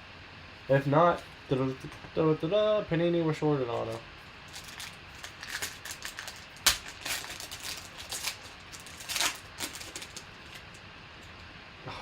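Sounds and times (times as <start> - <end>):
trading cards clicking and rustling: 3.7 - 11.4
card pack snapping: 4.5 - 10.8.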